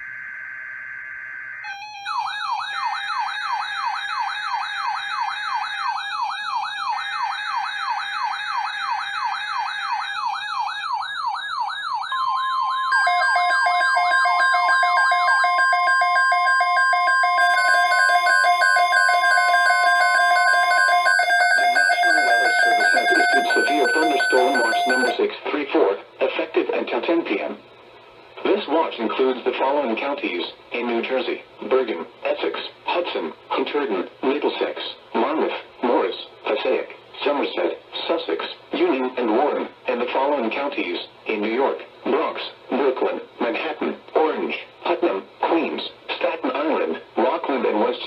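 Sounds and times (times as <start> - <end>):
alarm tones: 0.0 - 5.8, 8.7 - 25.2
electronic siren sweeping: 0.0 - 25.2
steady alert tone: 12.4 - 25.2
shrill data-like tones: 12.7 - 25.2.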